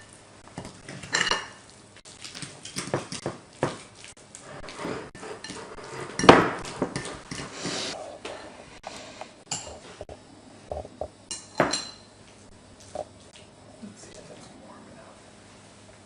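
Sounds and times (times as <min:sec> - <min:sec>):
dishes and cutlery clattering: 0:00.6 - 0:01.6, 0:11.3 - 0:12.1.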